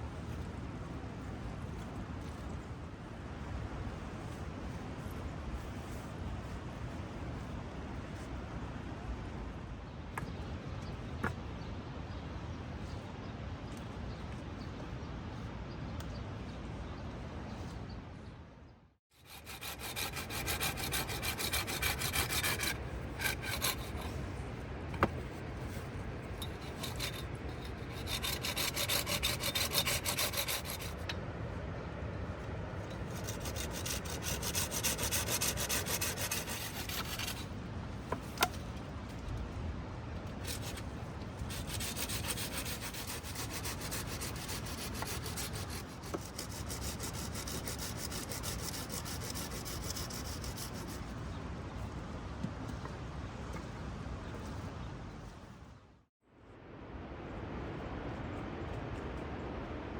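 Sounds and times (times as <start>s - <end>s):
hand tool scraping wood: 19.2s - 24.3s, 25.0s - 31.2s, 32.9s - 37.5s, 40.4s - 51.1s.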